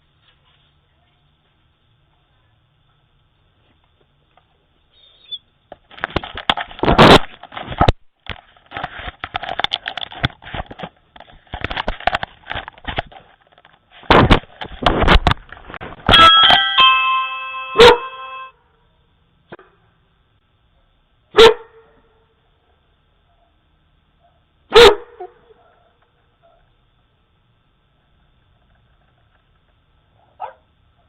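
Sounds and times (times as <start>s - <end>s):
knocks and scrapes on doorbell microphone: 14.0s - 16.2s
doorbell chime: 16.1s - 18.6s.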